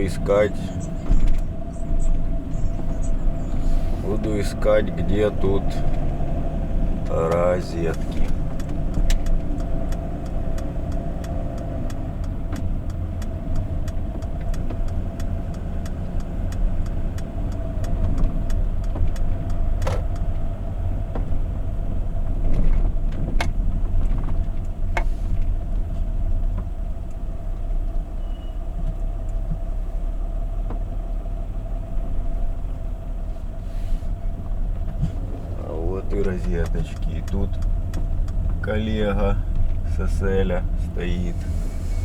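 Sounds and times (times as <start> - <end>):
diesel engine rumbling: 0.0 - 42.0
fast regular ticking: 6.8 - 20.3.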